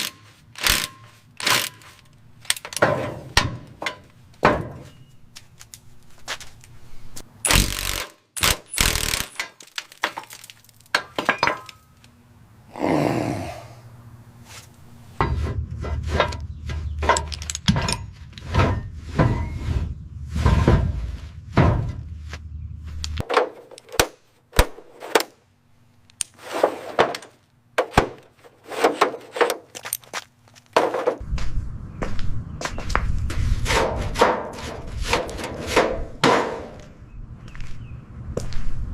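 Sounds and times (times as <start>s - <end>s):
low hum: 11.8s - 23.2s, 31.2s - 35.0s, 36.0s - 38.9s
hand tool knocks and scrapes: 15.2s - 22.1s.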